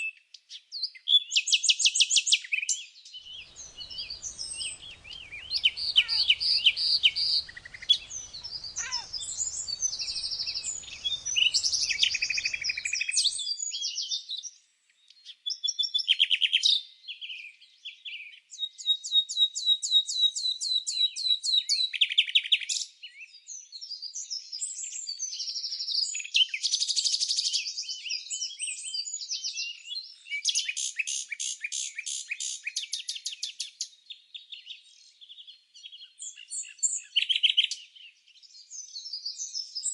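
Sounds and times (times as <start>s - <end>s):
songbirds chirping and trilling: 0.0s - 39.9s
faint background hiss: 3.2s - 13.4s.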